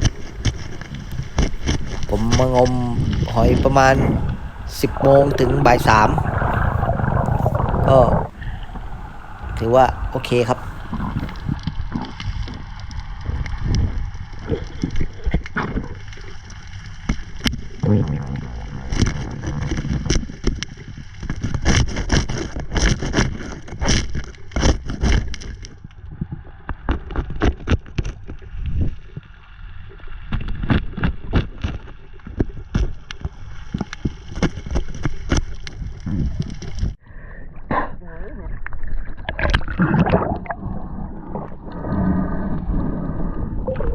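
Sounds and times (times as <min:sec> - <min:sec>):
water sloshing and gurgling: 0:00.0 - 0:37.0, 0:38.3 - 0:43.9
heavy low rumble: 0:01.2 - 0:11.6.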